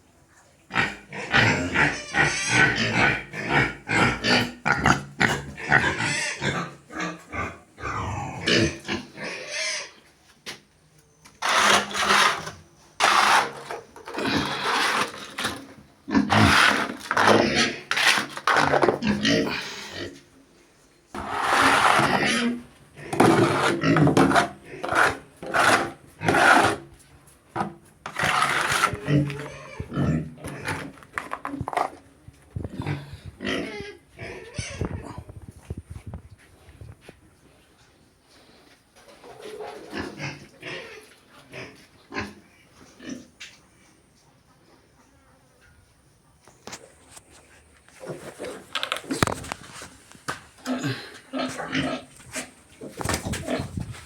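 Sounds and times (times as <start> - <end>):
pigs grunting: 0.7 - 9.9, 11.4 - 20.2, 28.1 - 32.0, 50.6 - 53.8.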